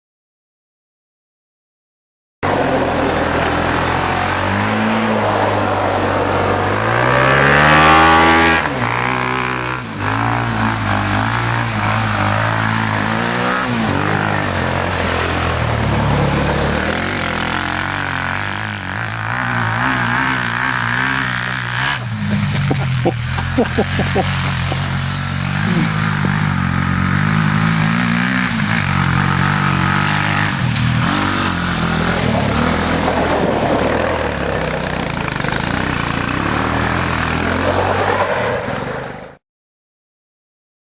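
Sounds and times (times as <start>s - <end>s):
vehicle engine revving: 2.4s - 39.4s.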